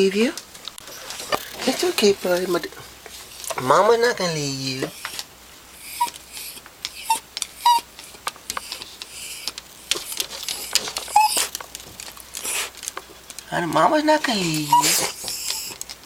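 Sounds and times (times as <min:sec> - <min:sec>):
sharp clicks and scratching: 0:00.4 - 0:03.7, 0:06.0 - 0:16.0
dog whimpering: 0:05.8 - 0:11.6, 0:14.2 - 0:15.8.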